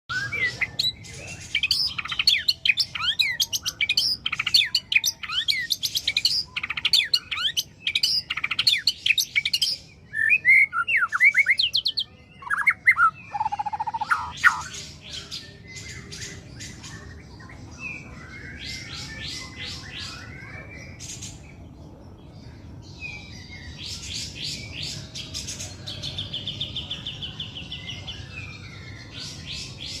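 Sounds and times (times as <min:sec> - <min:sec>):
bird singing whistles: 0:10.1 - 0:14.7.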